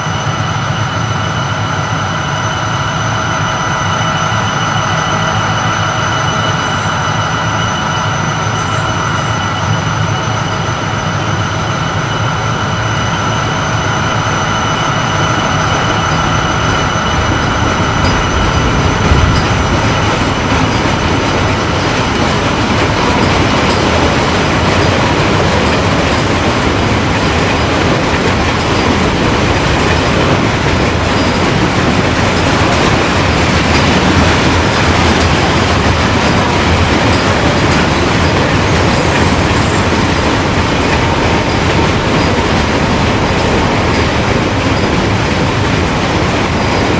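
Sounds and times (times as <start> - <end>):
freight train rumbling past: 0.0 - 46.9
high squealing wheels: 0.0 - 46.9
clickety-clack over rail joints: 12.8 - 46.9.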